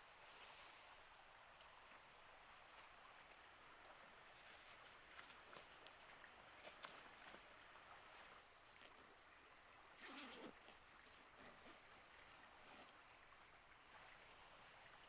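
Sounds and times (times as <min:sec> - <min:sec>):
soft rustle: 0:00.0 - 0:01.7.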